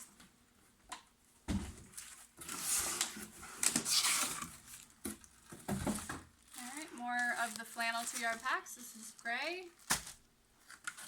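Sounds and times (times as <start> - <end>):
thump: 1.5 - 1.8
packaging rustling: 1.9 - 11.0.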